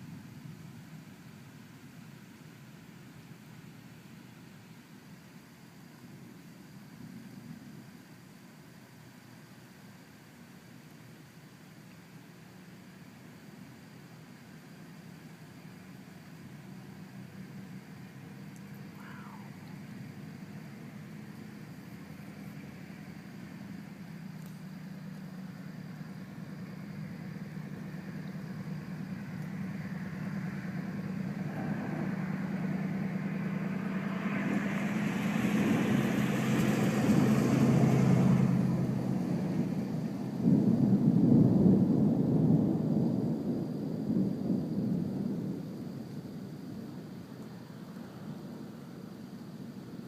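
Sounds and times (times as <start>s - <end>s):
rolling thunder: 18.8s - 49.2s.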